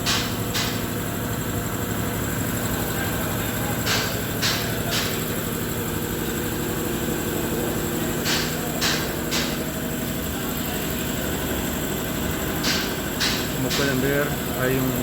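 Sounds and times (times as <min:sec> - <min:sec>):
mechanical hum: 0:00.0 - 0:15.0.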